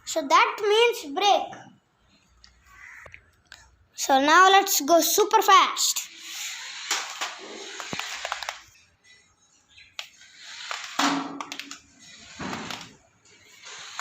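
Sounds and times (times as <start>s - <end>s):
toy car motor whirring: 5.8s - 8.8s, 10.0s - 14.0s
wheels rolling on floor: 6.0s - 8.8s, 9.8s - 14.0s.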